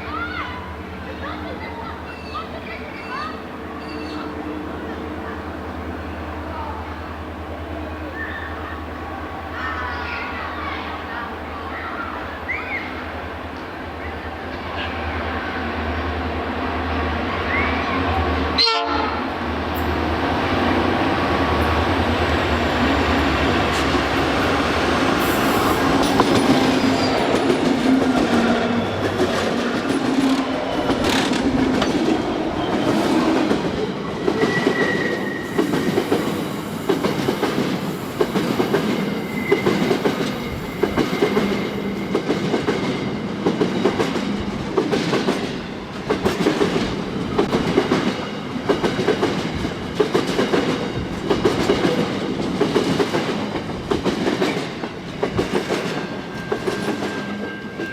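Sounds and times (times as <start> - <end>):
faint wheel squeal: 3.0 - 4.5, 8.0 - 8.8, 34.4 - 35.9, 39.1 - 41.7
wheels clacking over rail joints: 23.2 - 33.7.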